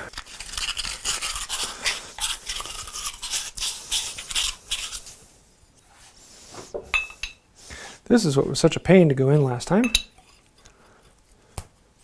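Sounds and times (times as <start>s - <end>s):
scratchy scrubbing by hand: 0.0s - 5.2s.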